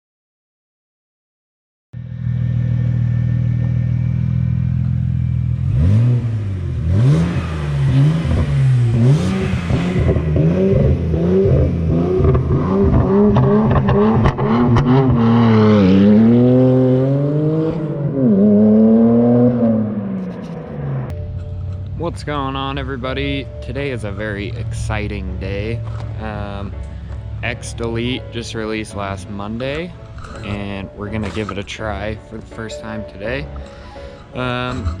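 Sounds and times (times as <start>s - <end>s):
car engine idling and revving: 2.0s - 35.0s.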